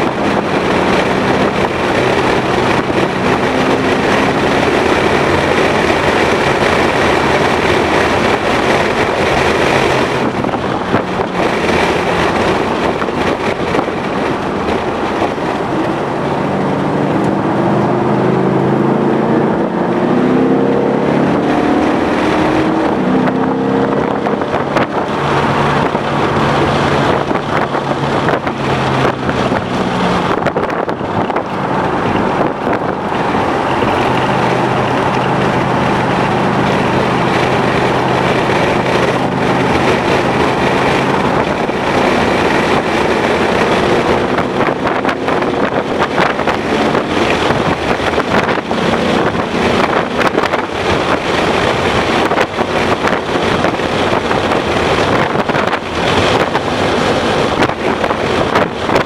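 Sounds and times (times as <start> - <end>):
car engine accelerating: 0.0 - 59.0
wind and road noise: 0.0 - 59.0.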